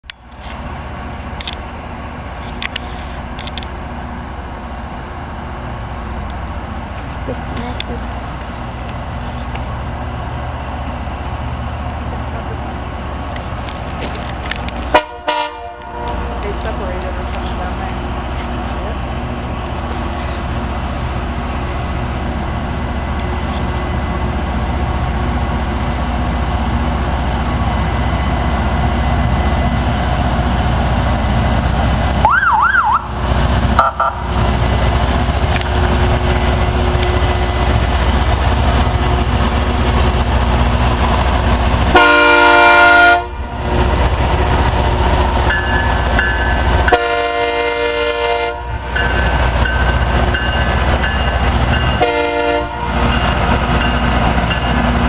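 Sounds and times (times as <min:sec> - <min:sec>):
diesel engines running: 0:00.0 - 0:55.0
horn long blasts: 0:14.9 - 0:16.5, 0:41.9 - 0:43.5, 0:46.9 - 0:48.9, 0:52.0 - 0:53.1.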